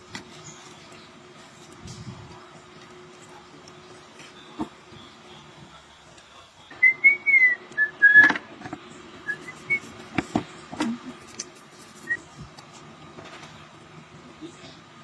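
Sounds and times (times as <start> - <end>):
person whistling: 9.3 - 9.9.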